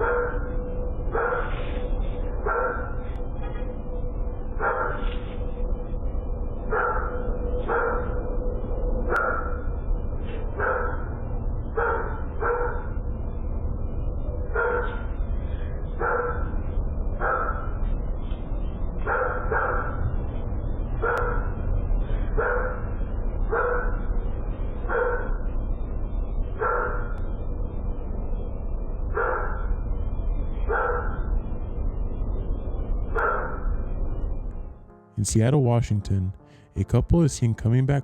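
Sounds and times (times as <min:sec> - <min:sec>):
dog barking: 0:00.0 - 0:00.5, 0:01.2 - 0:01.6, 0:02.4 - 0:03.0, 0:04.6 - 0:05.1, 0:06.7 - 0:08.2, 0:09.1 - 0:09.6, 0:10.6 - 0:11.1, 0:11.8 - 0:13.0, 0:14.6 - 0:15.1, 0:16.0 - 0:16.5, 0:17.2 - 0:17.7, 0:19.1 - 0:20.0, 0:21.0 - 0:21.5, 0:22.4 - 0:22.8, 0:23.5 - 0:24.0, 0:24.9 - 0:25.4, 0:26.6 - 0:27.2, 0:29.2 - 0:29.7, 0:30.7 - 0:31.3, 0:33.2 - 0:33.7
steady low rumble: 0:00.0 - 0:38.0.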